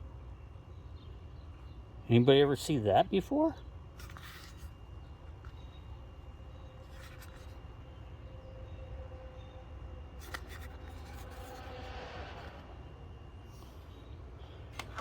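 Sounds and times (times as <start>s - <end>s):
steady low hum: 0.0s - 15.0s
faint rubbing and scraping: 6.7s - 7.7s, 10.2s - 12.8s.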